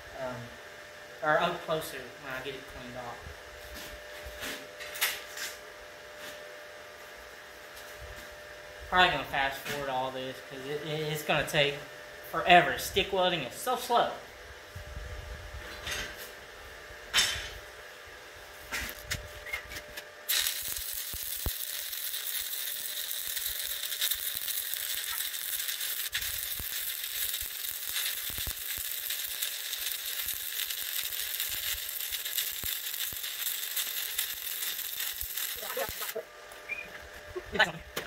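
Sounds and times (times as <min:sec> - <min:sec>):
welding arc crackling: 0:18.6 - 0:36.2.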